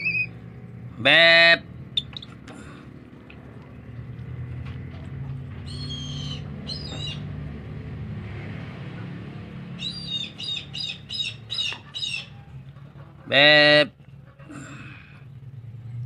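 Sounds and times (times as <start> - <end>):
eagle calling: 0.0 - 0.4, 1.4 - 2.4, 5.6 - 7.3, 9.8 - 12.5.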